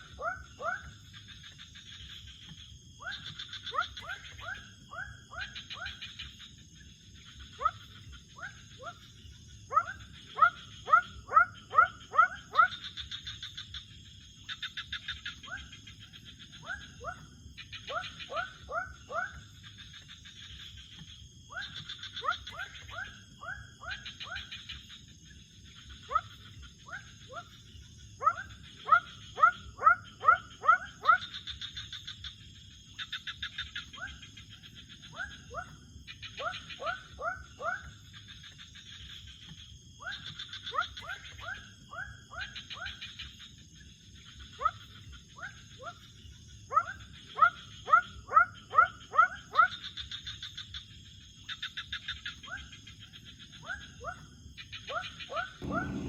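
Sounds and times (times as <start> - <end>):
pulsing trills: 55.6 - 56.0
short rising animal chirps: 55.6 - 56.0.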